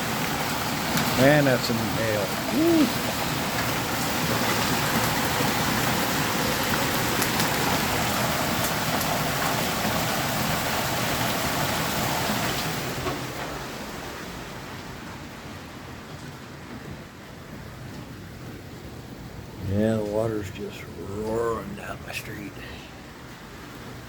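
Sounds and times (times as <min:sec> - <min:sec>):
heavy rain hissing: 0:00.0 - 0:15.0, 0:18.9 - 0:24.0
hailstones striking: 0:03.6 - 0:10.2.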